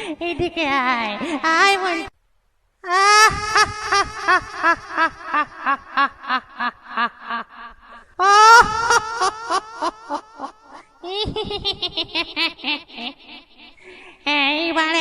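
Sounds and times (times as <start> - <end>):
high-pitched ghostly cackling laugh: 2.9 - 13.8.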